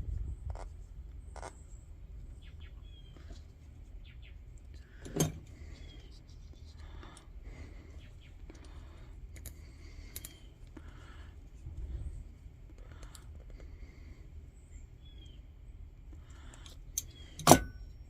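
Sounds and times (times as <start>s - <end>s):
metal parts clicking and tapping: 5.0s - 5.5s, 16.5s - 17.8s
sharp metallic clink: 17.0s - 17.8s.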